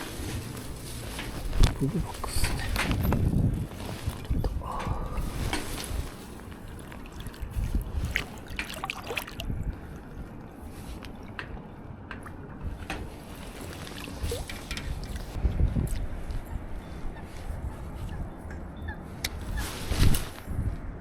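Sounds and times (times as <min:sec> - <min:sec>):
water trickling and sloshing: 0:00.0 - 0:16.1.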